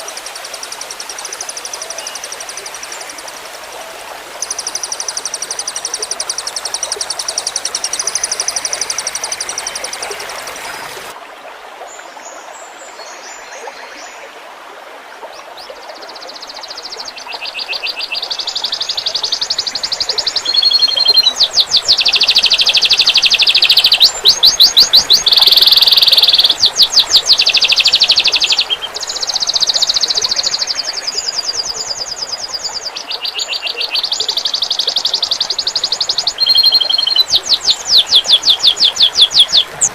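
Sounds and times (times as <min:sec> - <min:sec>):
faint trickle of water: 0:00.0 - 0:39.9
songbird singing rapid trills: 0:04.4 - 0:10.8, 0:16.5 - 0:39.9.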